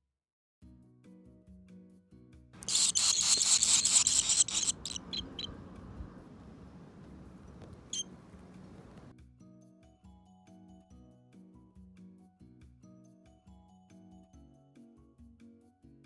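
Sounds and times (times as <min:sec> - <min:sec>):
nestlings chirping: 0:02.6 - 0:09.1.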